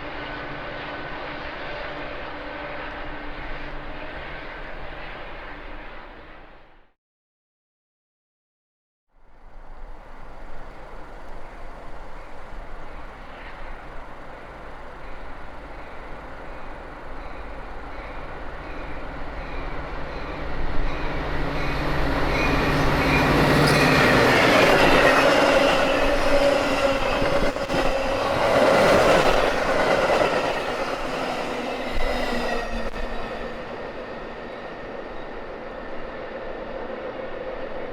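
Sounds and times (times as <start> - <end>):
train wheels rumbling: 9.3 - 37.9
wheels clicking over track: 9.4 - 33.2.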